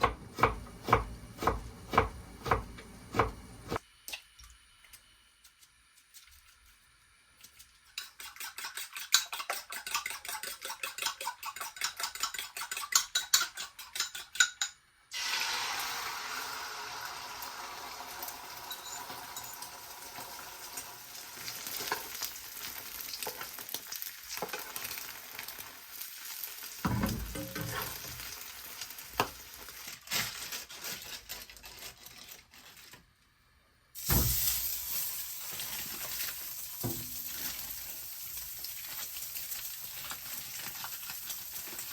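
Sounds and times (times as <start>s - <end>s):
food sizzling in a pan: 15.1s - 30.3s, 34.0s - 41.9s.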